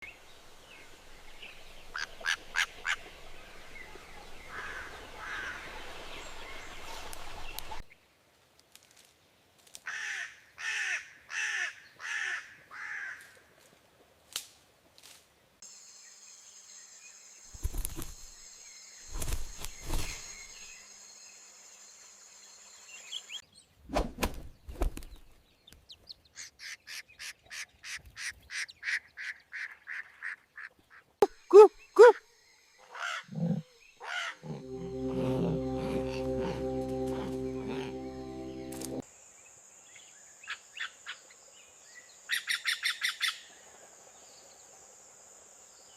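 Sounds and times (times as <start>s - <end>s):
steady high-pitched tone: 34.6s - 39.0s.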